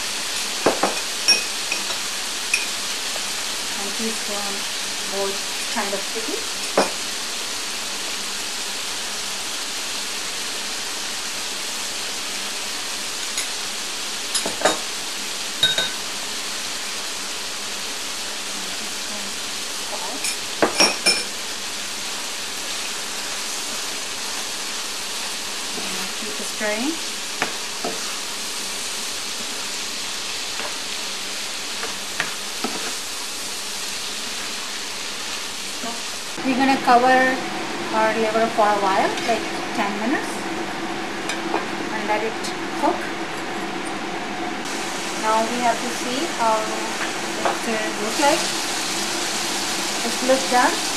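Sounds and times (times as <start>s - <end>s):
liver sizzling in oil: 0.0s - 50.9s
spoon clinking on pan: 15.6s - 16.0s.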